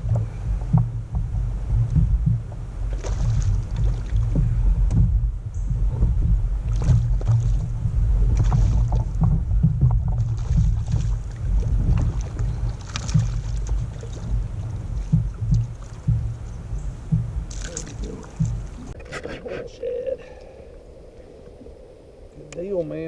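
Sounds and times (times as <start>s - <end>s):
water and wind rumble: 0.0s - 23.0s
small knocks and splashes: 0.1s - 5.1s, 6.0s - 19.0s.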